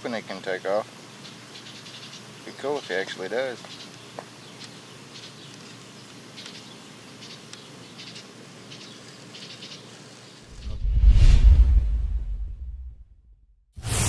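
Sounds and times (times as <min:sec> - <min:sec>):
steady outdoor hiss: 0:00.0 - 0:10.8.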